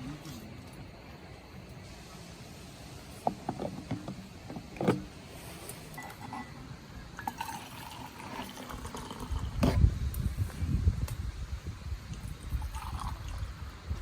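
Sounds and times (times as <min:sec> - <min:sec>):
low steady background noise: 0:00.0 - 0:14.0
faint clinks: 0:05.7 - 0:07.5.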